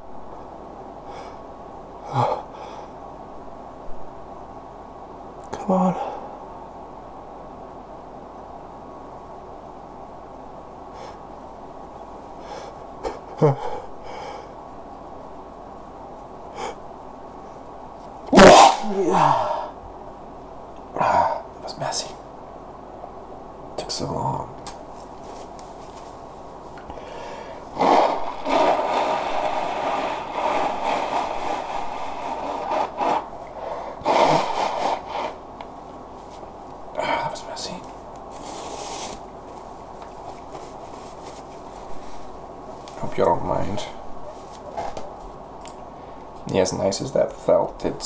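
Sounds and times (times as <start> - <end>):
paper napkin rubbing nose: 18.3 - 19.0, 27.2 - 35.4, 38.3 - 39.3
man gasping before sneeze: 18.3 - 19.7.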